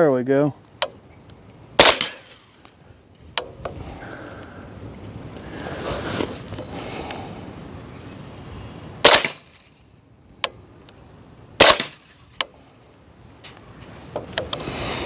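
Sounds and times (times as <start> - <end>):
bullet striking steel: 1.8 - 2.4, 9.0 - 9.7, 11.6 - 12.2
suppressed rifle shots: 1.8 - 2.4, 9.0 - 9.6, 11.6 - 12.1.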